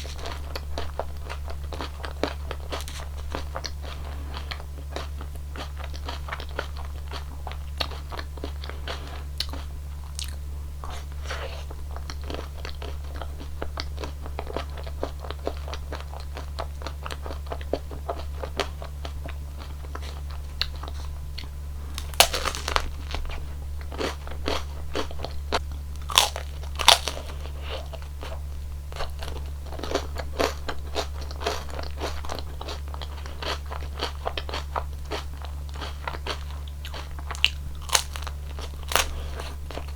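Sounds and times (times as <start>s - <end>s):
crunching ice cream cone: 0.0s - 39.9s
low hum: 17.8s - 32.6s.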